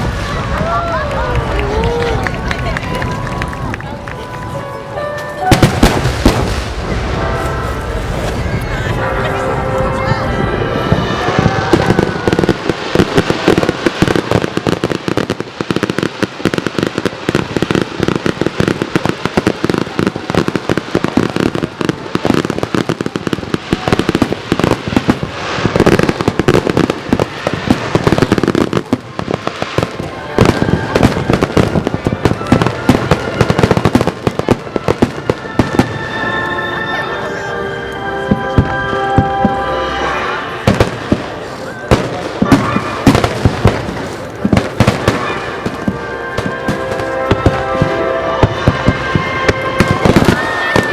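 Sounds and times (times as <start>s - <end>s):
fireworks banging and popping: 0.0s - 36.5s, 38.2s - 39.6s, 40.6s - 50.9s.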